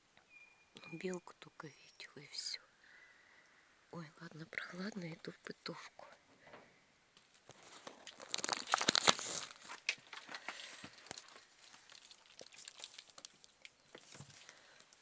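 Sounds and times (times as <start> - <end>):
crinkling rustling crackles: 4.0 - 15.0.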